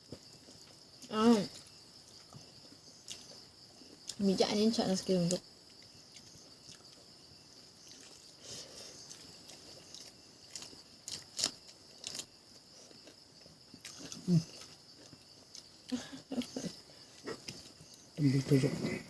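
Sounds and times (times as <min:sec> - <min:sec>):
person chewing: 0:05.9 - 0:07.1, 0:07.8 - 0:18.1
crunchy biting clicks: 0:09.8 - 0:12.3.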